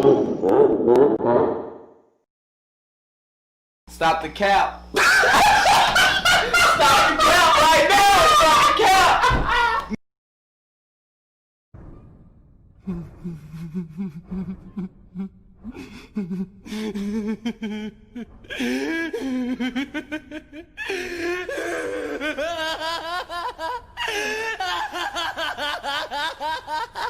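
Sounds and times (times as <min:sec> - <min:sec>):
high-pitched wavering laugh: 0:05.0 - 0:07.6
low pulsing laugh: 0:12.9 - 0:27.0.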